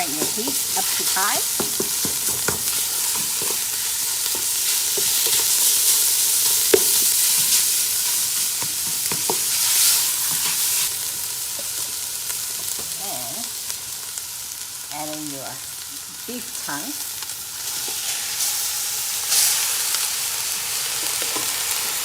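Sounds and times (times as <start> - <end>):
utensil scraping a pot: 0.0 - 11.0
food sizzling in hot oil: 0.0 - 22.0.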